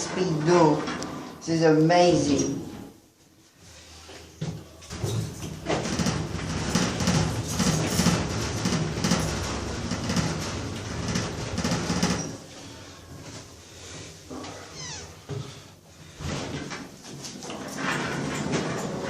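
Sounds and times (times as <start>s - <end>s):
lift doors sliding: 4.9s - 12.5s, 16.1s - 19.0s.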